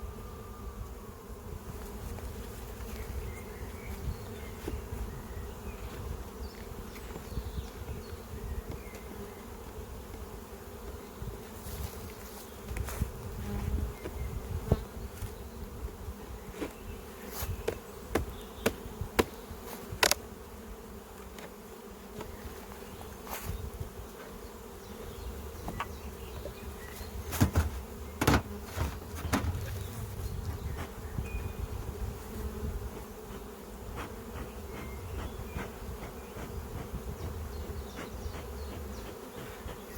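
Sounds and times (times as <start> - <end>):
bees buzzing: 0.0 - 39.9
sharp clicks and knocks: 27.3 - 29.8.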